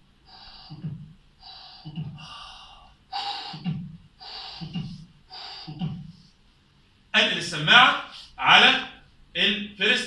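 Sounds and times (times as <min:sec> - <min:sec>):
blowing hissing heart murmur: 0:00.0 - 0:06.2
heartbeat thuds: 0:03.6 - 0:05.1.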